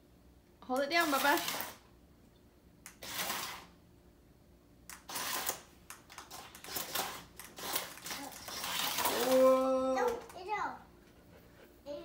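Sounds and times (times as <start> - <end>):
toy car rattling through plastic tubes: 5.0 - 10.4.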